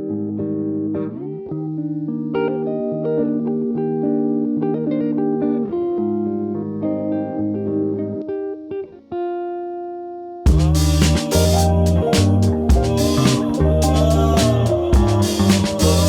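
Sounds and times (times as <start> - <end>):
plucked guitar melody: 0.0 - 9.7
bass notes: 10.5 - 16.0.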